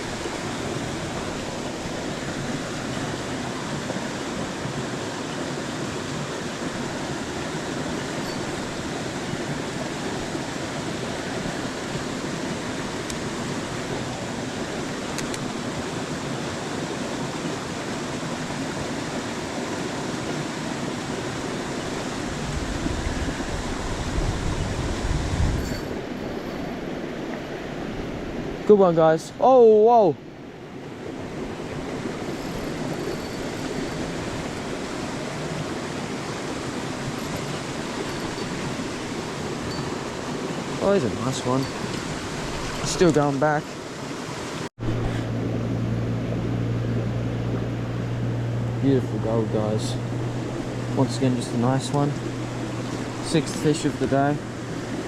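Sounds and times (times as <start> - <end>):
river water rushing: 0.0 - 55.0
wind buffeting microphone: 21.2 - 28.6, 30.9 - 43.1.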